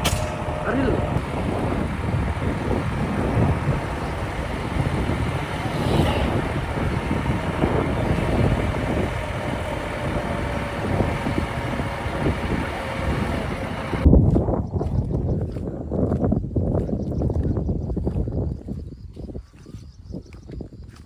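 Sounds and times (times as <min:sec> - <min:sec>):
diesel engine running: 0:00.0 - 0:14.1
wind buffeting microphone: 0:00.0 - 0:21.0.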